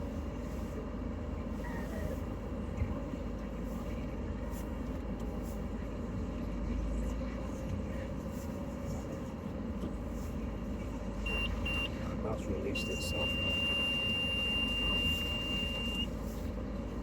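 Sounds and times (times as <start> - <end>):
van engine running: 0.0 - 17.0
short high beeps: 11.3 - 11.9, 12.9 - 16.1.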